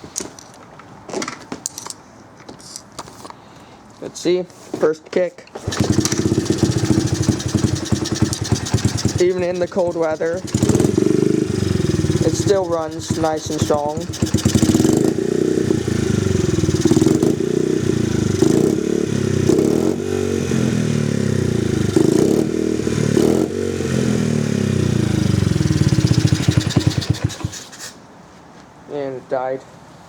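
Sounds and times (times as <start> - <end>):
small motorcycle engine revving: 5.6 - 28.0.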